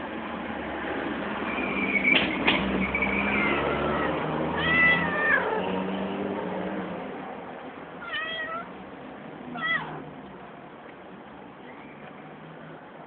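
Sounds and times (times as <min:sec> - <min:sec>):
cat meowing: 0:03.1 - 0:05.8, 0:08.0 - 0:08.8, 0:09.5 - 0:10.1.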